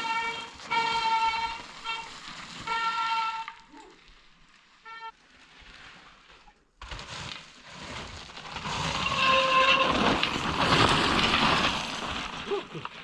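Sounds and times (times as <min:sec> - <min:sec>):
brakes squealing: 0:00.0 - 0:03.9, 0:08.4 - 0:13.0
bike tyres rumbling on trail: 0:00.0 - 0:13.0.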